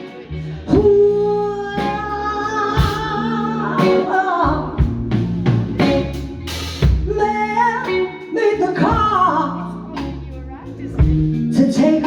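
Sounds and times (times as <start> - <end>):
live band playing blues ballad: 0.0 - 12.0
drum strikes: 3.8 - 7.1.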